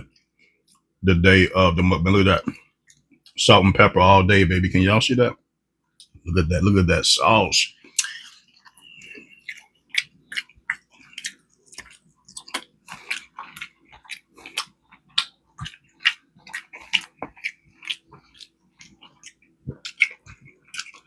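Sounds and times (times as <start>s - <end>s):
wet chewing and biting: 8.0s - 21.0s.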